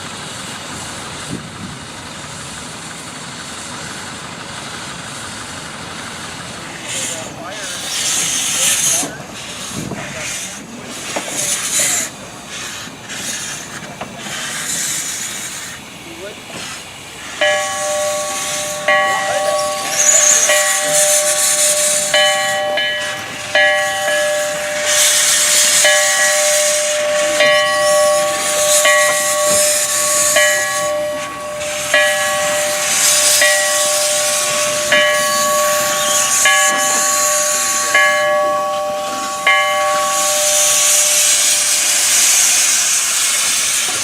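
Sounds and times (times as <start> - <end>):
steam hissing: 0.0 - 44.0
locomotive bell ringing: 17.3 - 44.0.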